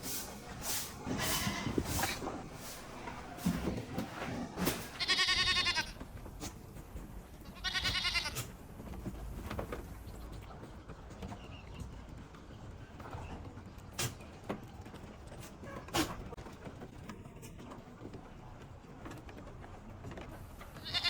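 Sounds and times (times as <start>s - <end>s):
goat bleating: 4.9s - 6.0s, 7.4s - 8.5s, 20.7s - 21.0s.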